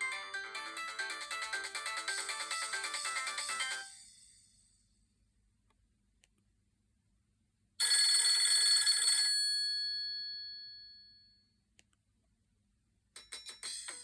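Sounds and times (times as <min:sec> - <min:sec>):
telephone bell ringtone: 0:07.8 - 0:11.5.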